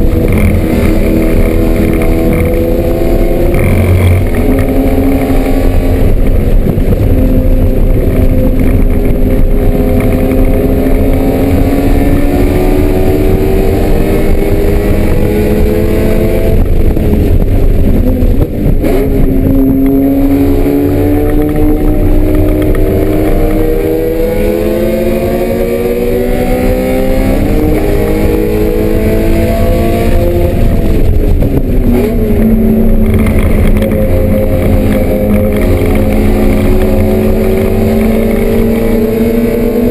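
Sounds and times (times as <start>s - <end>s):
race car engine revving: 0.0s - 39.9s.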